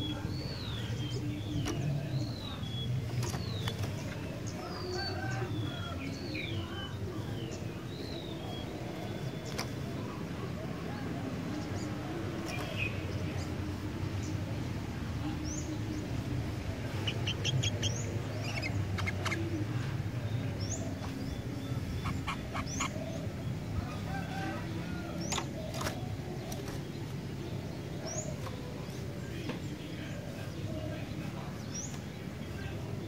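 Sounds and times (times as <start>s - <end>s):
songbirds chirping: 0.0s - 33.0s.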